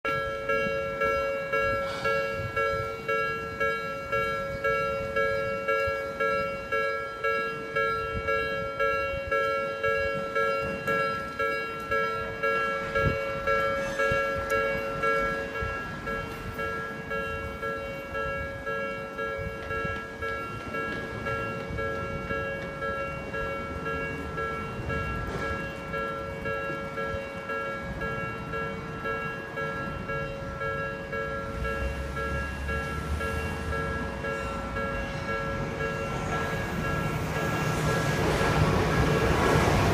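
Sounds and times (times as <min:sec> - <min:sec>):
railroad crossing bell ringing: 0:00.0 - 0:39.9
train rumbling past: 0:00.1 - 0:39.9.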